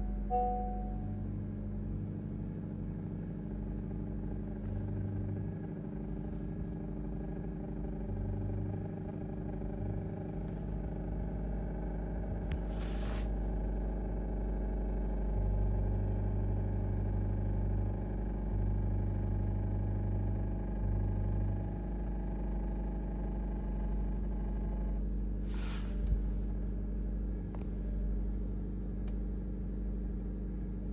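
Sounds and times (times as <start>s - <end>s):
car engine running: 0.0s - 30.9s
engine rattle: 0.0s - 30.9s
short hiss: 25.5s - 26.0s.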